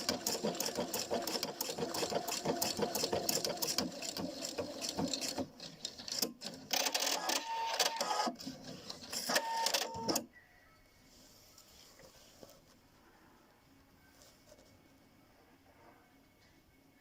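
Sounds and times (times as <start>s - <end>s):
sewing machine whine: 0.0s - 5.5s
sewing machine clicking: 0.0s - 8.0s.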